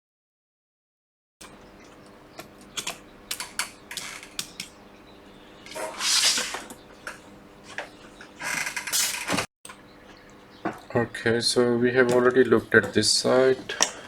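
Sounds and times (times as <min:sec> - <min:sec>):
rustling scrape: 0:05.7 - 0:06.7.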